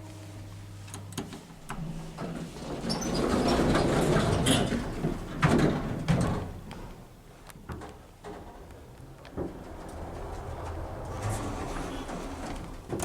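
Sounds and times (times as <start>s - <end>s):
lift doors sliding: 1.7s - 7.0s, 8.2s - 13.0s.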